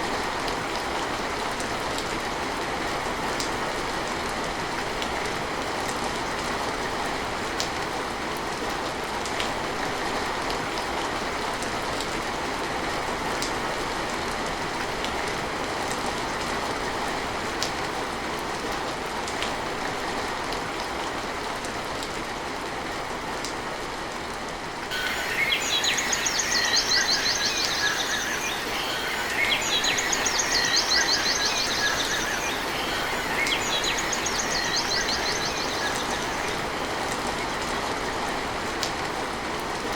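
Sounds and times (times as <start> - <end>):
steady rain falling: 0.0 - 39.9
rapid trilling calls: 24.9 - 36.7.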